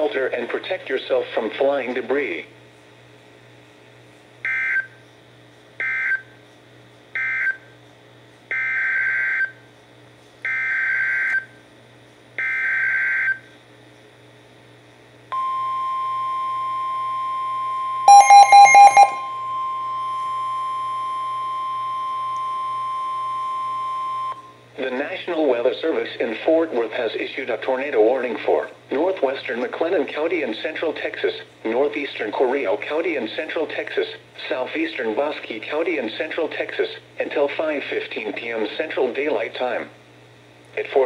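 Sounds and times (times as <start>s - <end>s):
steady warning alarm tone: 16.7s - 24.4s
data bursts: 18.1s - 19.3s
rapid beeps: 18.1s - 19.3s.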